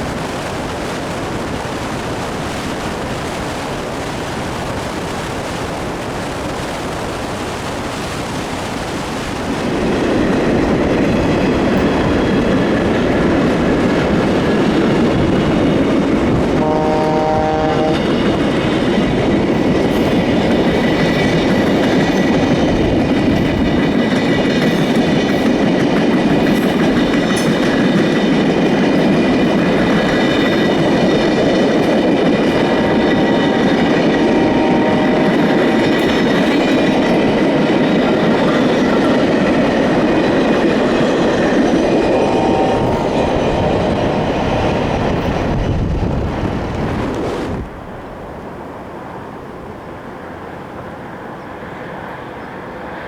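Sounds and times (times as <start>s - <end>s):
train rumbling on rails: 0.0s - 53.0s
train horn blast: 16.6s - 18.2s, 34.2s - 35.8s, 42.3s - 45.0s.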